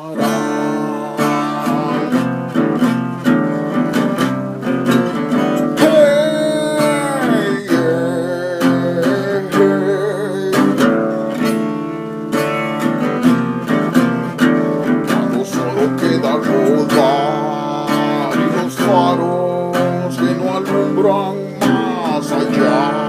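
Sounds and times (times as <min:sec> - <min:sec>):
held melody line with vibrato: 0:00.0 - 0:23.0
strummed acoustic guitar: 0:00.0 - 0:23.0.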